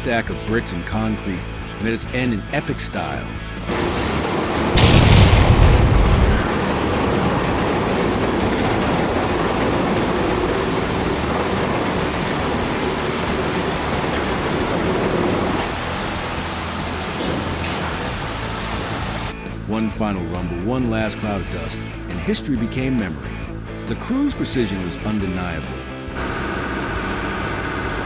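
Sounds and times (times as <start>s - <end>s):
building collapsing rumble: 3.7s - 12.5s
blast with low boom: 4.7s - 7.8s.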